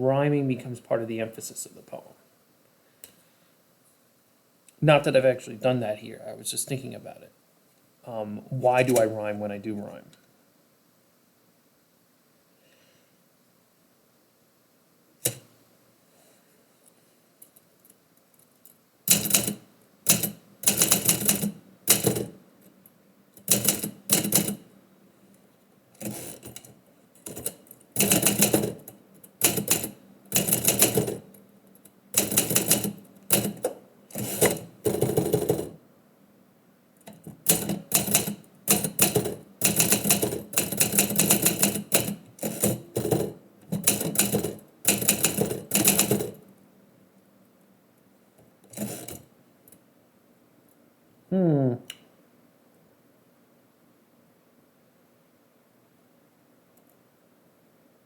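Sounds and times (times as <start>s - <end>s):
typewriter typing: 19.1s - 22.4s, 23.4s - 24.6s, 26.0s - 31.4s, 32.2s - 35.8s, 37.1s - 46.4s, 48.7s - 49.2s.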